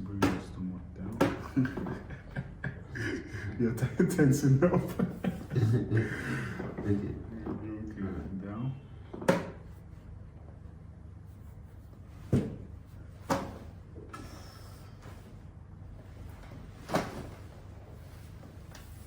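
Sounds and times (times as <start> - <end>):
sharp knocks on treatment table: 9.2 - 9.6.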